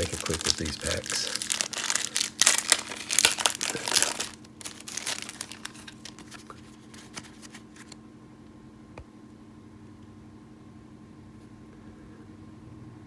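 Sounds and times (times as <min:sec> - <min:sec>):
wrappers and cards crinkling: 0:00.0 - 0:08.0
faint steady hum: 0:00.0 - 0:13.0.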